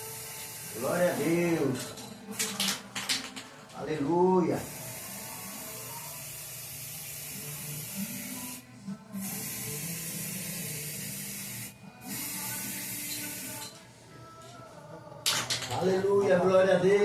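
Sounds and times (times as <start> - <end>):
spray paint can hissing: 0.0 - 1.6, 4.6 - 8.6, 9.2 - 13.7.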